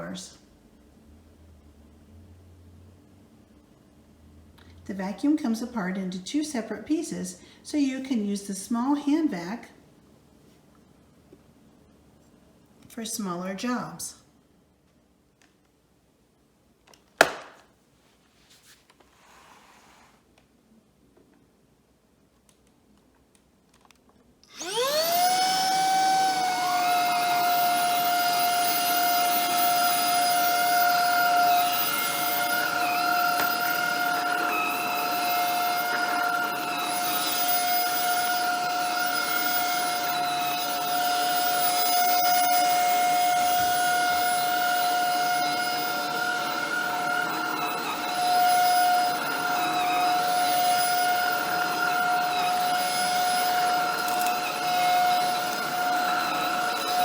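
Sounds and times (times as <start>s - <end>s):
cordless vacuum motor whine: 24.4s - 57.0s.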